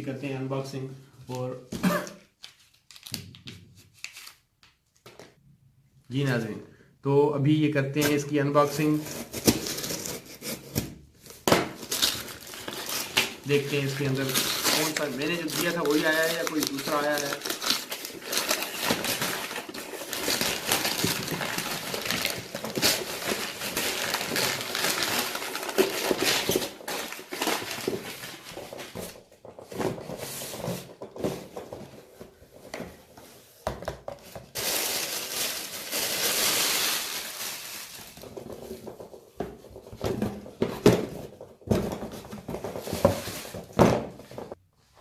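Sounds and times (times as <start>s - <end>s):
packaging crinkling and rustling: 11.3s - 32.7s, 34.4s - 44.6s.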